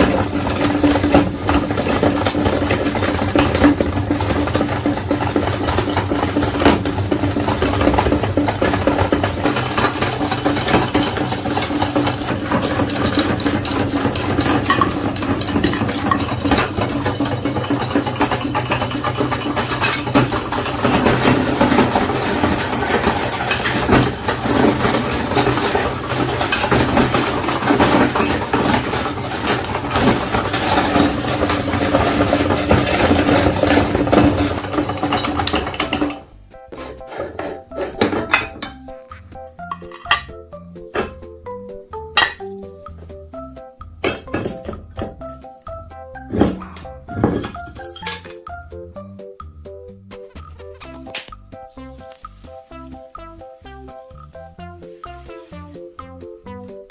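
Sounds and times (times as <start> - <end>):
meat grinder motor humming: 0.0 - 36.1
crackling and rattling of grinding: 0.0 - 49.0, 50.0 - 56.9.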